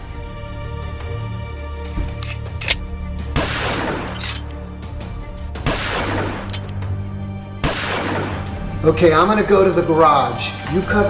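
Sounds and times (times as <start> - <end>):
background music with low bass: 0.0 - 11.0
gunfire bursts: 3.4 - 4.5, 5.7 - 6.7, 7.6 - 8.5.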